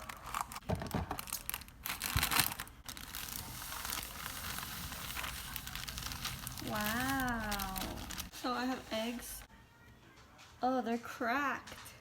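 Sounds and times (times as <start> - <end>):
packaging crinkling and rustling: 0.0 - 9.5.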